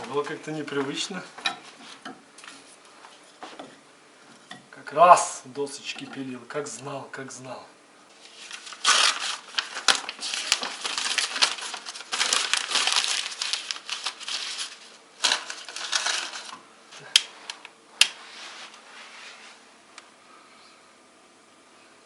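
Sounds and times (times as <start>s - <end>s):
paper crumpling and rustling: 8.1s - 16.6s.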